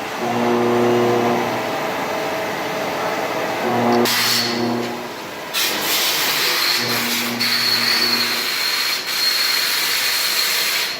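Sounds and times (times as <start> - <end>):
lathe machining hiss and whine: 3.4 - 10.9.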